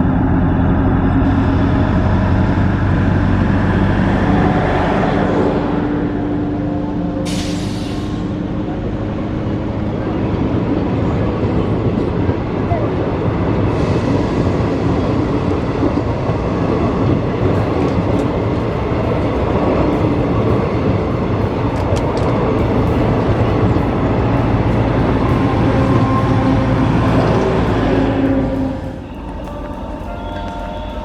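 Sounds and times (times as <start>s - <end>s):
train rumbling past: 0.0s - 31.0s
wheels ticking on rails: 8.1s - 31.0s.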